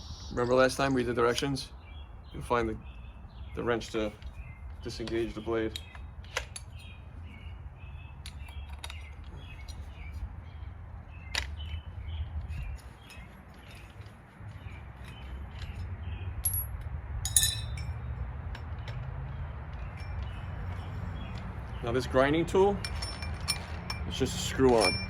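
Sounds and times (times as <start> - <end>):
birds chirping: 0.0 - 16.7, 17.3 - 23.2
metal tools clinking: 12.4 - 19.0, 19.7 - 21.4, 22.0 - 25.0.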